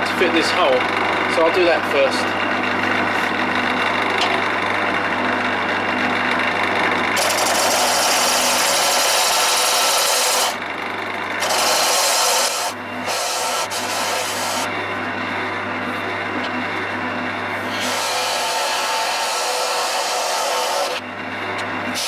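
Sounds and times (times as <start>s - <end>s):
wood lathe motor hum: 0.0s - 22.0s
tool cutting wood hiss: 11.4s - 14.7s, 17.6s - 21.0s.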